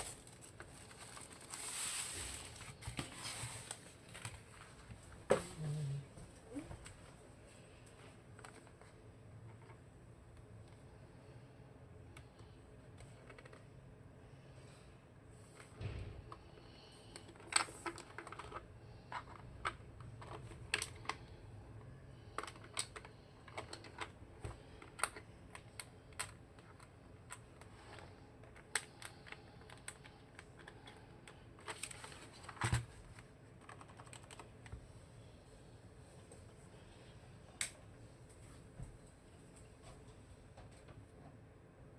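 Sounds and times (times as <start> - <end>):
mechanical keyboard typing: 33.6 - 34.5.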